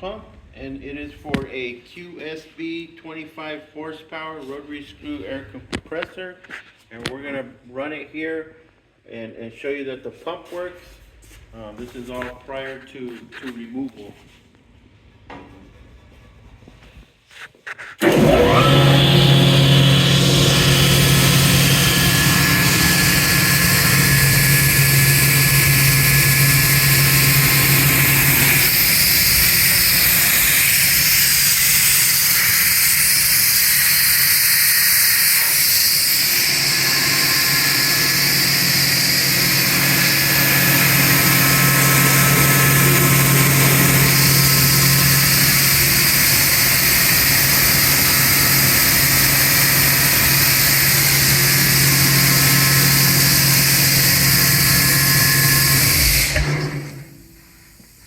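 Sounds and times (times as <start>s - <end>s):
air compressor low hum: 18.0s - 31.2s, 36.2s - 58.0s.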